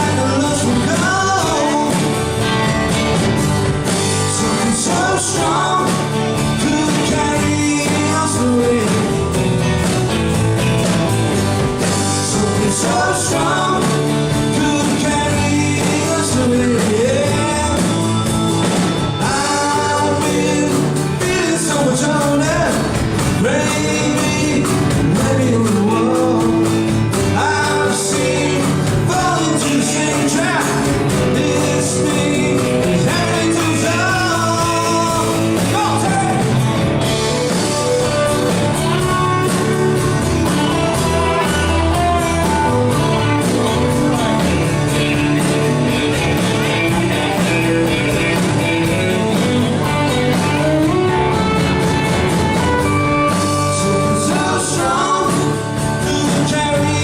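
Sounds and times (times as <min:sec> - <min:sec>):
person singing: 0:00.0 - 0:02.5, 0:04.1 - 0:09.4, 0:12.1 - 0:18.3, 0:19.2 - 0:44.6, 0:52.8 - 0:57.0
live band playing: 0:00.0 - 0:57.0.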